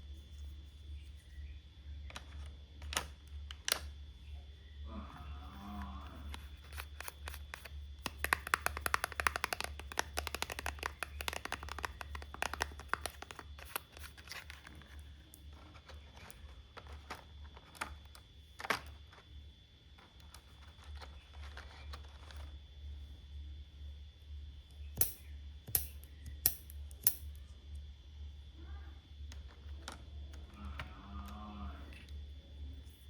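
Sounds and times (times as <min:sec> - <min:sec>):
low hum: 0:00.0 - 0:08.3, 0:13.0 - 0:33.0
plastic toy pieces clicking: 0:05.8 - 0:19.2, 0:25.0 - 0:27.4.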